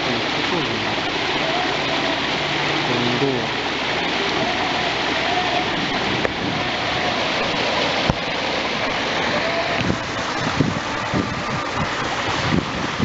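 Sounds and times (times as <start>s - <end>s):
sea water rushing: 0.0s - 13.0s
wind: 0.0s - 13.0s
wind buffeting microphone: 5.6s - 13.0s.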